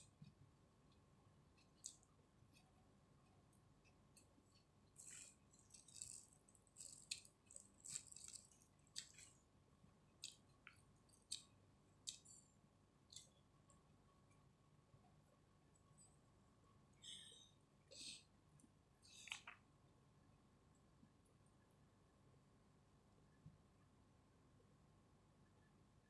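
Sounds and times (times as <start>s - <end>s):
wet chewing sounds: 5.0s - 9.4s.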